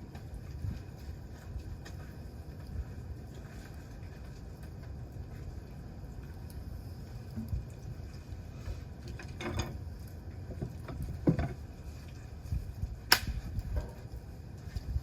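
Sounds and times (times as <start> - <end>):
campfire crackling: 0.0 - 15.0
low steady rumble: 0.0 - 15.0
burning wood pops: 13.0 - 14.9.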